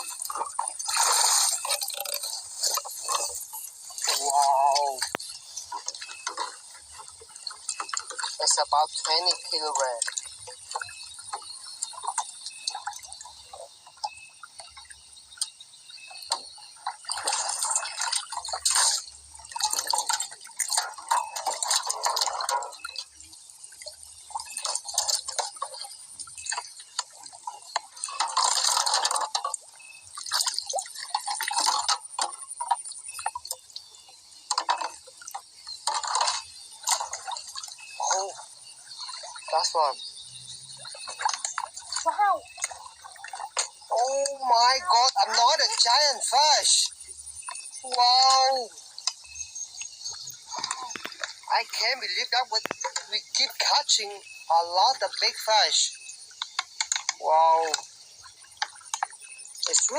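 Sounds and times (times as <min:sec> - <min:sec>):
water splashing and sloshing: 0:00.0 - 0:59.9.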